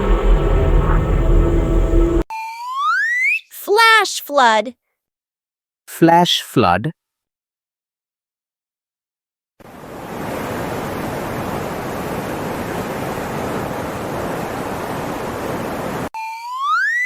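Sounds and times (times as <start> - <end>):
rushing water: 9.7 - 16.1.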